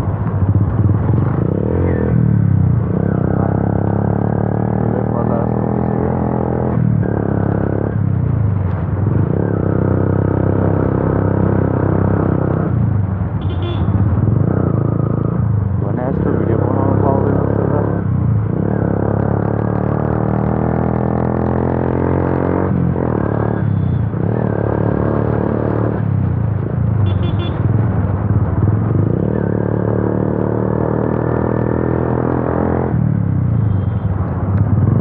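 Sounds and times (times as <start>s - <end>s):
loud motorcycle engine accelerating: 0.4s - 8.1s, 13.9s - 26.3s, 28.2s - 33.3s.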